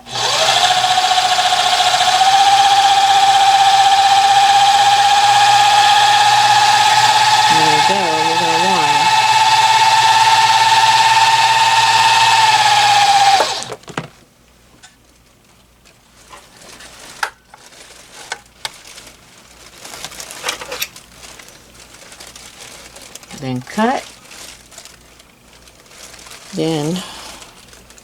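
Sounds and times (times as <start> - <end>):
sewing machine motor whine: 0.0 - 13.8.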